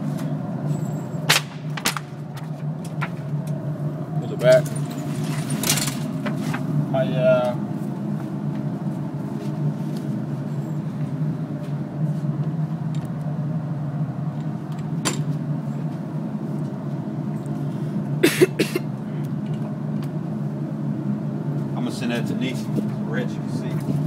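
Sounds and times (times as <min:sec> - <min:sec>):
sharp cracks: 0:01.3 - 0:02.2.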